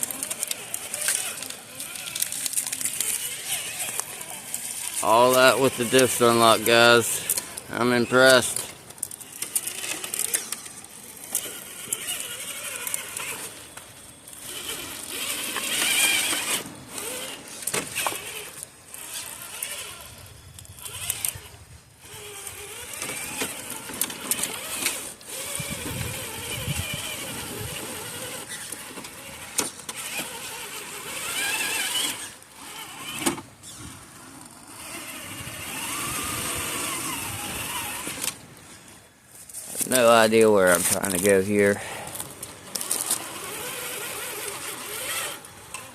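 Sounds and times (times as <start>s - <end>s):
electric motor whining: 0.0s - 45.9s.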